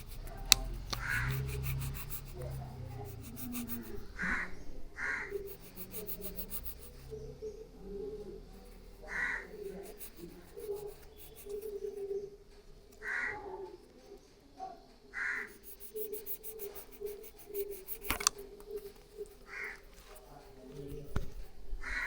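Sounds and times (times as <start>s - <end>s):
crow cawing: 4.2s - 5.4s, 9.1s - 9.5s, 13.0s - 13.4s, 15.1s - 15.5s, 19.5s - 19.8s.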